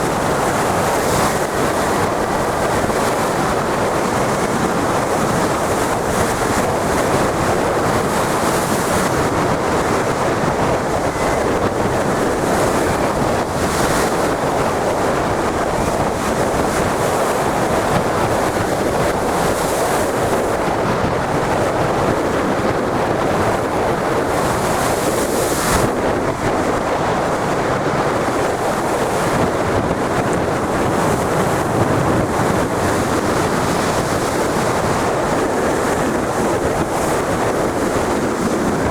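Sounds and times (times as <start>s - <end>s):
wind buffeting microphone: 0.0s - 38.9s.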